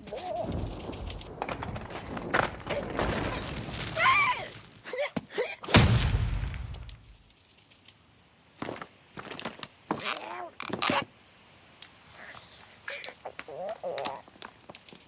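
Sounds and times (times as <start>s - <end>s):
loud cartoon boom: 5.7s - 6.9s.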